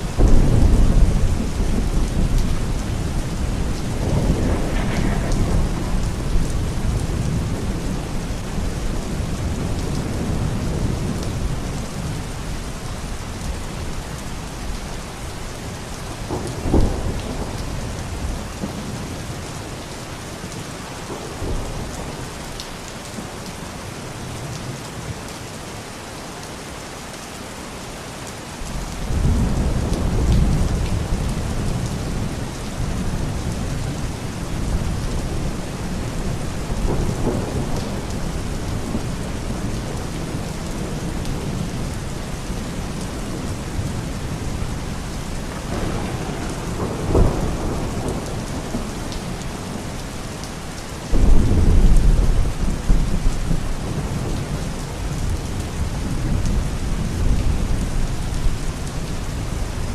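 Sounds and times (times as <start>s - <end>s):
steady rain: 0.0s - 59.9s
thunder rumbling: 0.1s - 12.2s, 15.6s - 19.4s, 29.0s - 59.9s
thunder crack: 0.2s - 7.7s.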